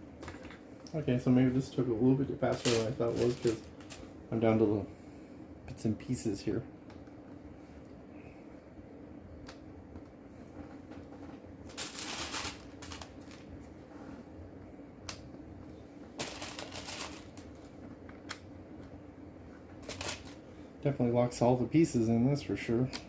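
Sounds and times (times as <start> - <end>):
loose plastic pieces rattling: 2.5 - 4.0, 11.7 - 13.4, 16.2 - 17.7, 19.8 - 20.4.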